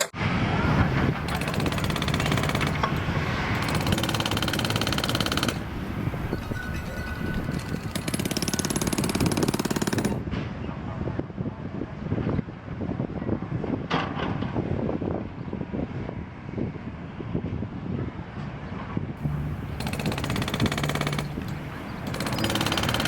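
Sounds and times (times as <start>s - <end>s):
construction machinery running: 0.7s - 10.2s, 19.2s - 23.0s
jackhammer hammering: 0.7s - 10.2s, 19.2s - 23.0s.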